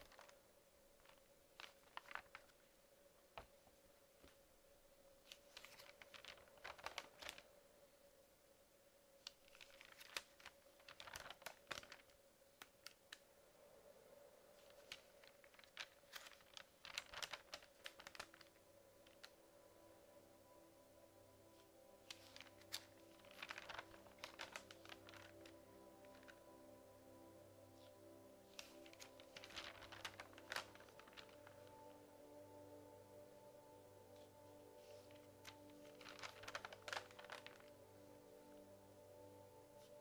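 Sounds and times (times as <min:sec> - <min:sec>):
magazine pages rustling: 0:00.0 - 0:04.4, 0:05.2 - 0:07.8, 0:09.2 - 0:13.3, 0:14.5 - 0:19.4, 0:21.5 - 0:26.6, 0:27.8 - 0:32.0, 0:34.1 - 0:38.7
faint steady hum: 0:00.0 - 0:40.0.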